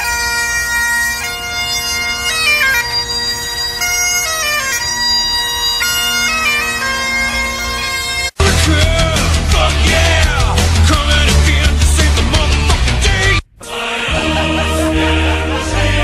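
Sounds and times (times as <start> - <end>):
bagpipes playing a melody: 0.0 - 8.4
bagpipe drones: 0.0 - 8.6.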